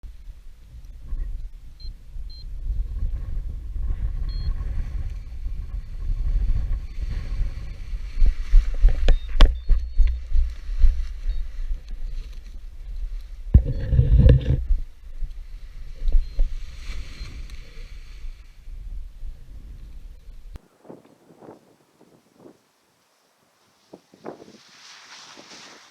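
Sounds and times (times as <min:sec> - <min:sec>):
strong wind buffeting microphone: 0:00.4 - 0:12.0, 0:12.6 - 0:22.7, 0:23.9 - 0:25.9.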